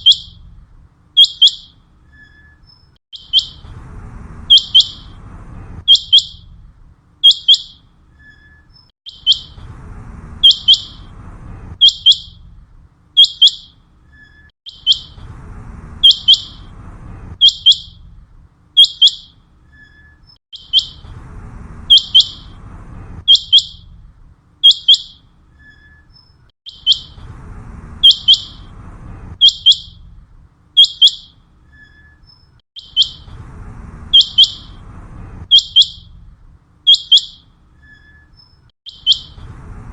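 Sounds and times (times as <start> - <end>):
quail calling: 26.7 - 27.2, 28.0 - 28.7, 32.8 - 33.3, 34.1 - 34.8, 38.9 - 39.4.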